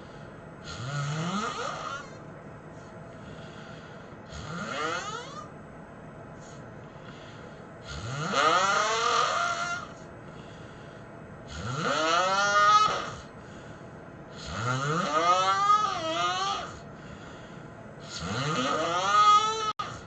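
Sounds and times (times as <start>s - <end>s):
person snoring: 0.6s - 2.2s, 3.2s - 5.5s, 7.0s - 10.0s, 11.5s - 13.3s, 14.3s - 17.4s, 18.0s - 20.0s.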